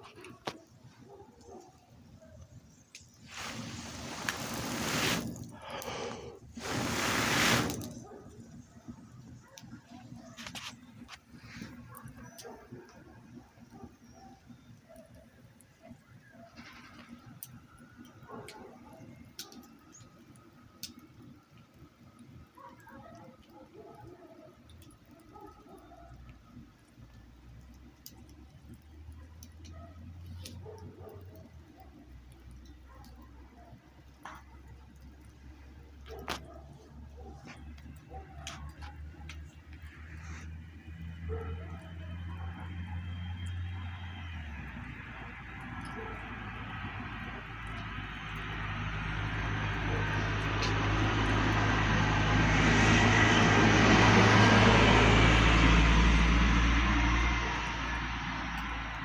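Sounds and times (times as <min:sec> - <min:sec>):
campfire crackling and popping: 0:02.4 - 0:54.4, 0:55.2 - 0:59.0
vehicle passing: 0:38.9 - 0:59.0.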